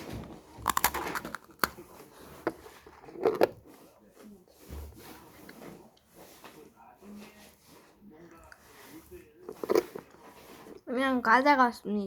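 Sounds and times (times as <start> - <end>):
quiet chewing: 0.0 - 10.9
crunching bites: 0.6 - 1.8.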